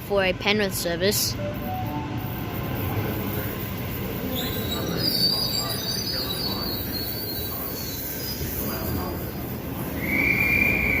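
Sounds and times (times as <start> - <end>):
electric train rumbling: 0.0 - 11.0
train wheels squealing: 4.1 - 11.0.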